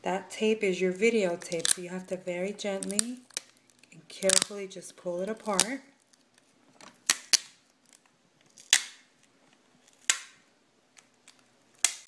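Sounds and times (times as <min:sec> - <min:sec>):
sharp clicks and snaps: 0:01.4 - 0:01.9, 0:02.8 - 0:04.6, 0:11.0 - 0:12.0
adhesive tape peeling: 0:07.0 - 0:09.1.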